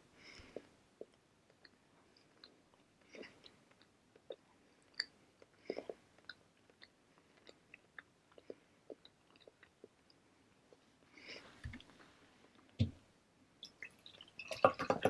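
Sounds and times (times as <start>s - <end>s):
chewing bread: 0.4s - 10.9s.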